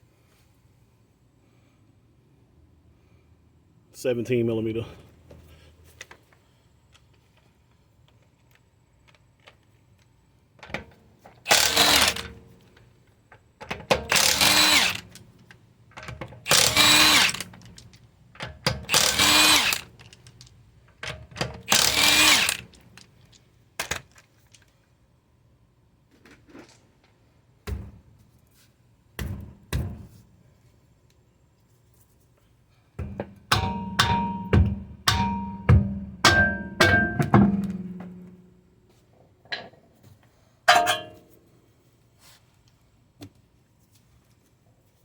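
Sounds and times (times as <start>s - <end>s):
power tool spinning bolts: 11.4s - 12.4s, 14.0s - 15.2s, 16.4s - 17.9s, 18.7s - 20.3s, 21.4s - 23.1s
sharp knocks: 33.0s - 38.3s.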